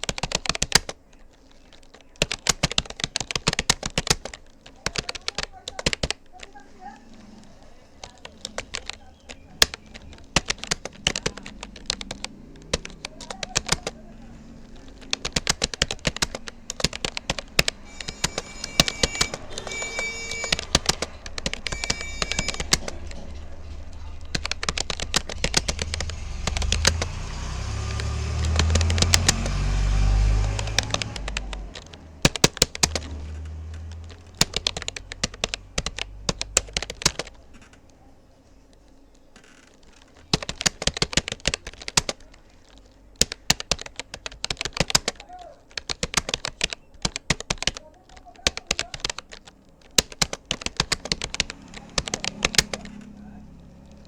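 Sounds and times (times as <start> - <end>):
keyboard keystroke clicks: 0.0 - 6.6, 7.8 - 38.0, 38.7 - 54.0
low rumble: 7.0 - 19.8, 20.5 - 29.1.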